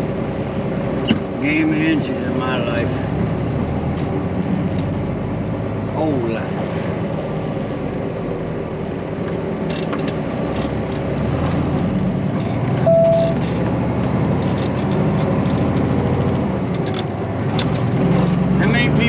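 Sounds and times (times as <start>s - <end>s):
truck engine and road drone: 0.0s - 19.0s
short beep: 12.9s - 13.4s.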